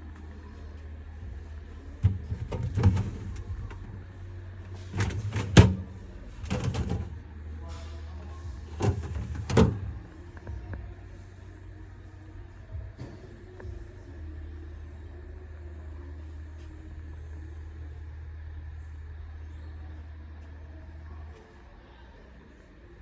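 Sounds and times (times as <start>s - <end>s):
low steady hum: 0.0s - 23.0s
fridge doors and drawers clattering: 2.0s - 4.0s, 4.7s - 7.2s, 8.7s - 10.0s.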